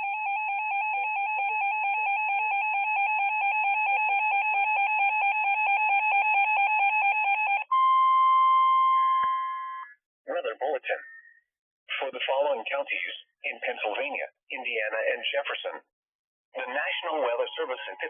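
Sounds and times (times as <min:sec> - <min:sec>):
steady single-pitch alert tone: 0:07.6 - 0:10.0.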